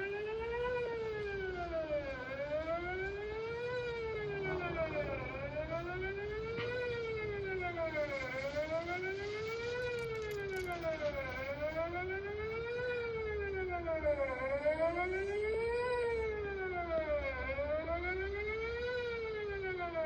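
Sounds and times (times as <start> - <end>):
tornado warning siren wailing: 0.0 - 20.0.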